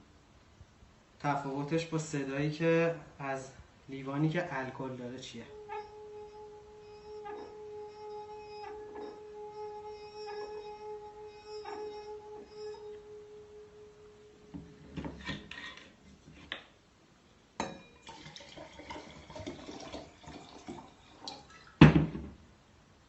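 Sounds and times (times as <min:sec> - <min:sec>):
drinking glass ringing: 0:05.5 - 0:14.8, 0:17.6 - 0:21.8
glass clinking: 0:05.6 - 0:13.0, 0:17.6 - 0:21.8
water and glassware handled: 0:17.6 - 0:21.8.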